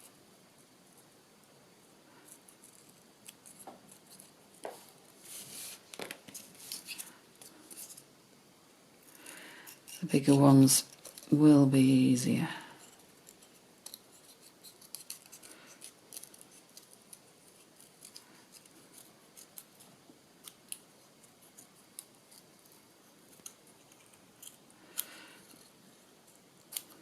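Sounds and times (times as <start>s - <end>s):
scissors snipping paper: 13.3s - 19.8s.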